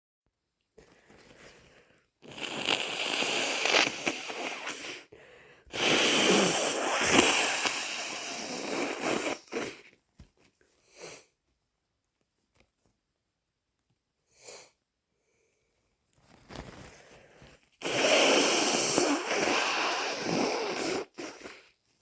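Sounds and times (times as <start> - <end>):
short sniffs: 2.2 - 9.9, 10.8 - 11.4, 14.3 - 14.8, 16.9 - 21.8
snotty nose blowing: 2.2 - 9.9, 17.8 - 21.8.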